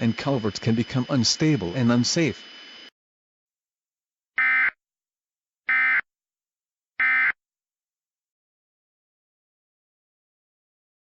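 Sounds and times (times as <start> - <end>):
shrill digital data tones: 0.0 - 2.9.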